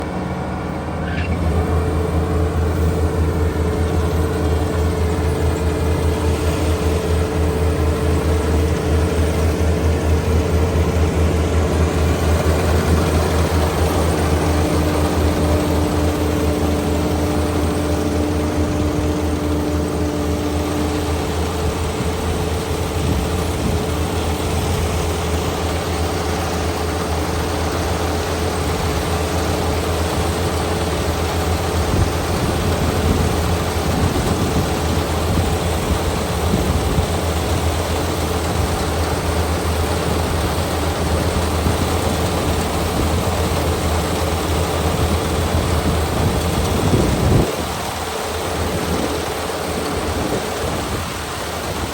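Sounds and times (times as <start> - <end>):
combine harvester drone and whine: 0.0 - 51.9.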